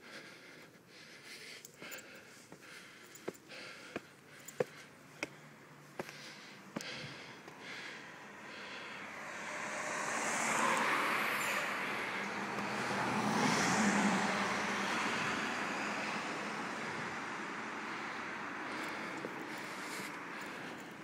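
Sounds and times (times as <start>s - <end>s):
low engine hum: 1.3s - 21.0s
car passing close by: 8.0s - 21.0s.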